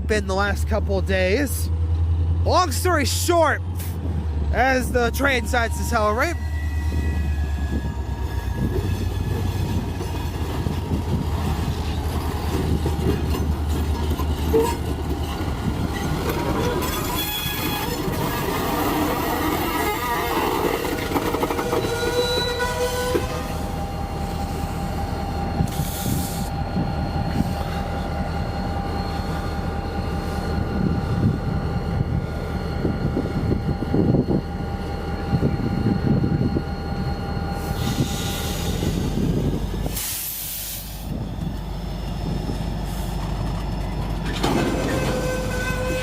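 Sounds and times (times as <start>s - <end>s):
diesel locomotive engine: 0.0s - 46.0s
train cars rolling on rails: 0.0s - 46.0s
high-pitched ringing tones: 23.8s - 38.7s.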